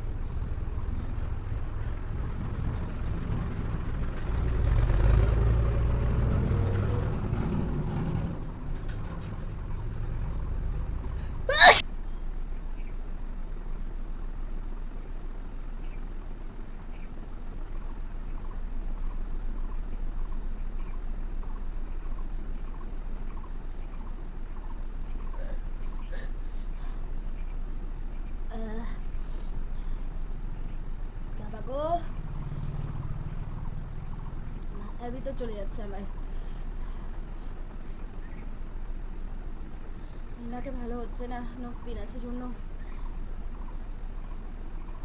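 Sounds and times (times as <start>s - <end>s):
person blowing nose: 11.2s - 11.8s
sharp sneeze: 11.2s - 11.8s.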